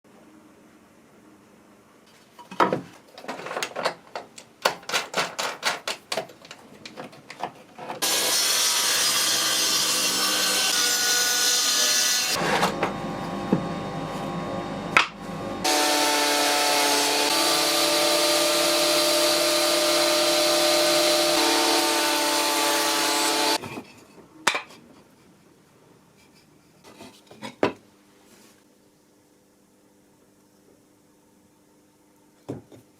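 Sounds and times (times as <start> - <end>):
woodworking power tool whining: 8.0 - 23.6.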